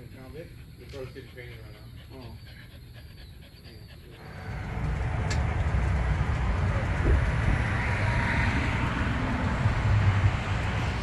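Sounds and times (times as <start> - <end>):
road noise: 0.0 - 11.0
vehicle engine rumble: 4.2 - 11.0.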